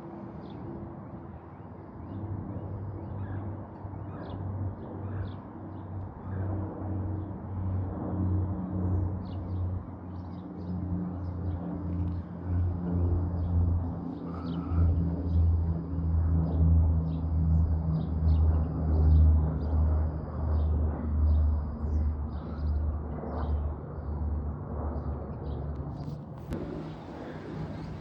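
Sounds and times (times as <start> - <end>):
low engine rumble: 26.0 - 28.0.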